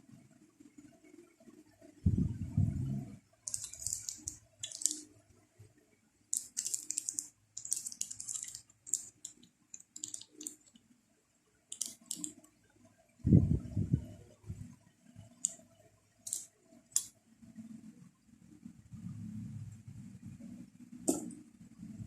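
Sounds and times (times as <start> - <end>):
hissy scraping of small parts: 3.5 - 5.1, 6.3 - 10.8, 11.7 - 12.4, 16.2 - 17.1.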